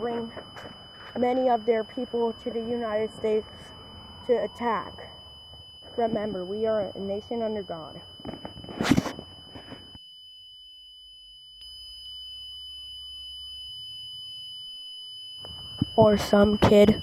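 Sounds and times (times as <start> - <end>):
high-pitched electronic tone: 0.0 - 10.2, 11.2 - 17.0.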